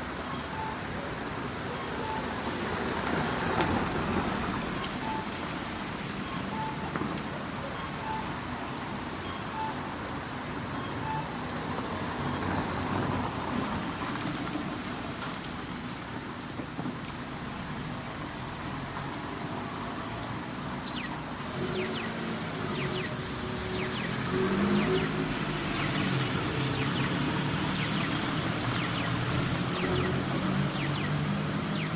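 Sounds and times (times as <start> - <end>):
road traffic: 0.0 - 31.9
crossing signal short beeps: 0.2 - 2.5, 4.8 - 5.5, 6.2 - 7.0, 7.6 - 8.6, 9.2 - 9.9, 10.7 - 11.5
vehicle engine hum approaching: 17.4 - 31.9.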